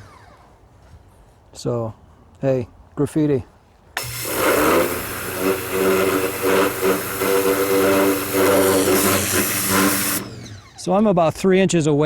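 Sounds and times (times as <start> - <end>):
pressure washer water jet hissing: 4.0 - 10.7
pump motor humming: 4.0 - 10.9.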